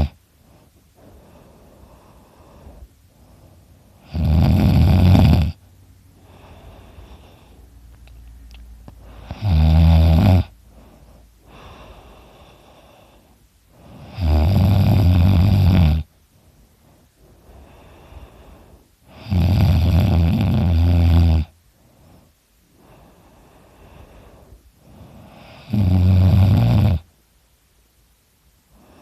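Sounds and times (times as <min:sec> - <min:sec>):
quiet breathing: 0:00.0 - 0:29.0
man snoring loudly: 0:04.0 - 0:05.6, 0:09.1 - 0:10.6, 0:13.9 - 0:16.1, 0:19.1 - 0:21.5, 0:25.3 - 0:27.1.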